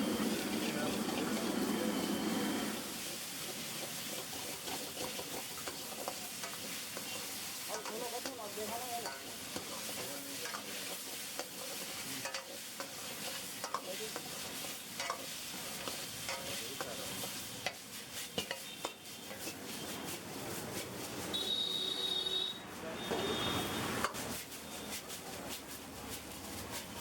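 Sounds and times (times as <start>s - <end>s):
food sizzling in a pan: 0.0s - 27.0s
metal utensil scraping pan: 3.0s - 21.4s, 23.9s - 25.1s.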